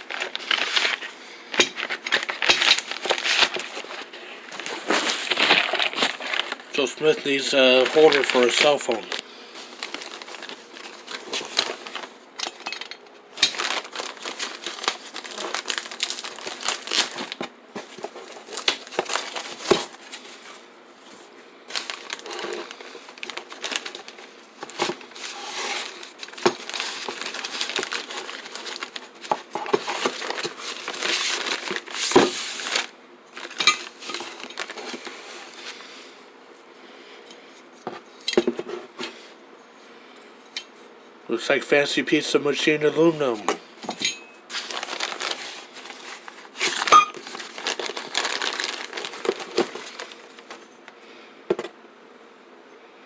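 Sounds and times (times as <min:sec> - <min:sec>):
plastic and foam crinkling: 0:00.0 - 0:35.9, 0:44.5 - 0:51.0.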